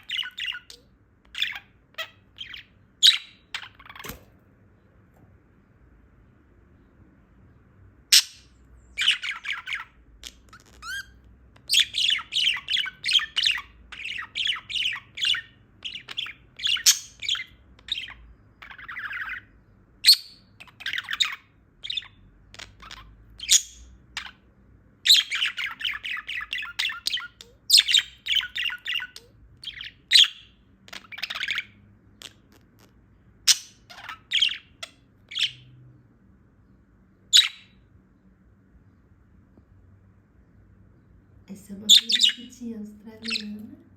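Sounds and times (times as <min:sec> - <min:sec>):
budgerigar chirping and chattering: 0:00.0 - 0:04.2, 0:08.1 - 0:24.4, 0:25.0 - 0:35.7, 0:37.3 - 0:37.8, 0:41.9 - 0:42.5, 0:43.2 - 0:43.6.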